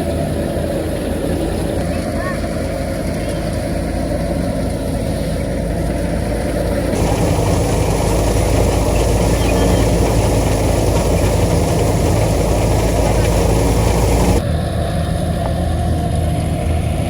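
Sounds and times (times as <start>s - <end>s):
threshing machine drone: 5.6s - 17.0s.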